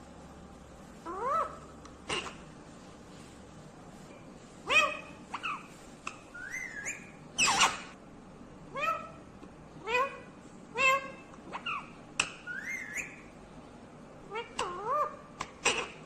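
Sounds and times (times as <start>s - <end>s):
parrot squawks and whistles: 6.3s - 8.0s, 10.8s - 13.3s.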